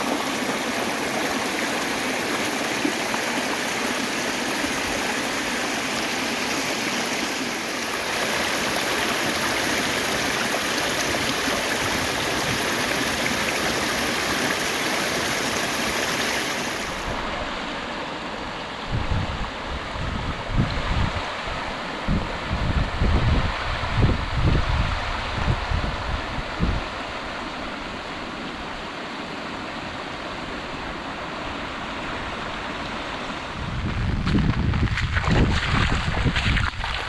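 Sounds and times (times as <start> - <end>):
water rushing along a canal: 0.0 - 37.0
wind buffeting microphone: 18.9 - 27.1, 33.5 - 37.0.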